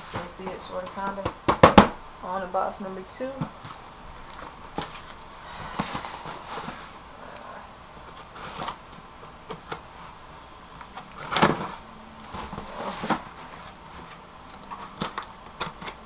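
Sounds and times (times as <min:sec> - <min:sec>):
box thump: 0:01.2 - 0:02.0, 0:11.2 - 0:13.8.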